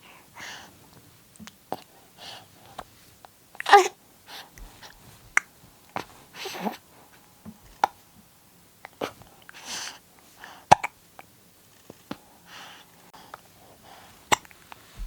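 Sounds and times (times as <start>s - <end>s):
soft breathy sounds: 0.0s - 1.0s, 1.7s - 3.2s, 12.0s - 15.0s
baby hiccupping: 3.6s - 4.0s, 10.7s - 11.0s, 14.3s - 14.5s.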